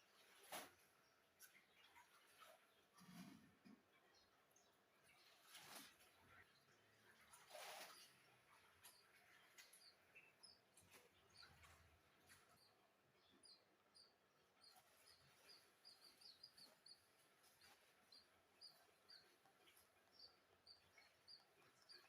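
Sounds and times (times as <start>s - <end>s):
high bird chirps: 8.8s - 22.0s.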